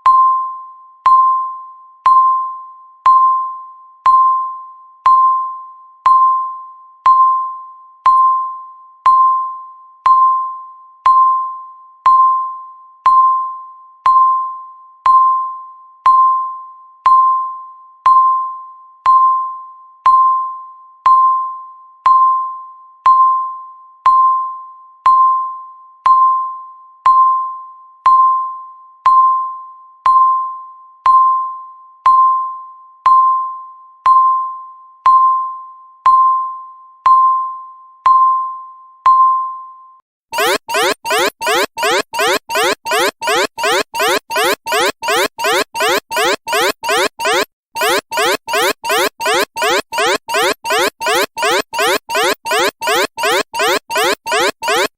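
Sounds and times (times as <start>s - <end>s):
timer beeping: 40.4s - 54.9s.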